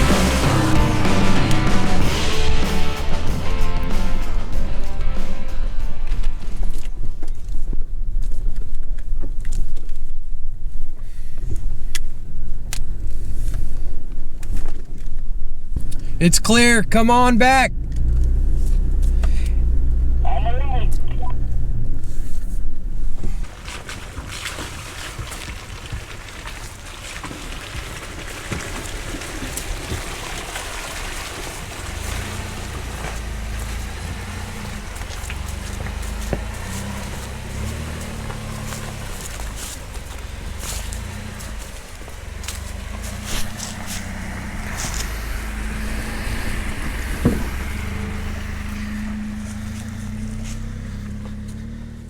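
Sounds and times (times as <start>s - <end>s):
vehicle engine rumbling: 0.0s - 23.6s, 29.0s - 52.0s
rushing noise with crackles: 0.0s - 51.0s
sharp thump: 47.1s - 47.7s.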